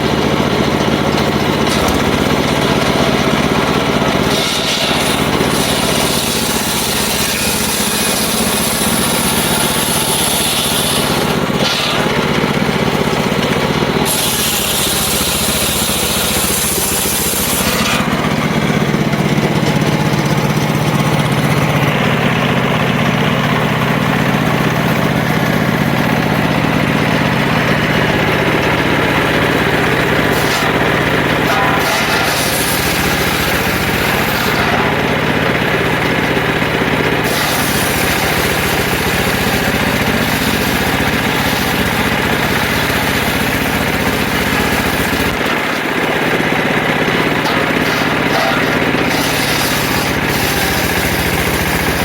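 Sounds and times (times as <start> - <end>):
circular saw running: 0.0 - 52.0
high-pitched saw cutting noise: 4.1 - 12.2, 14.0 - 18.6, 29.8 - 35.1, 37.2 - 45.9, 47.0 - 52.0.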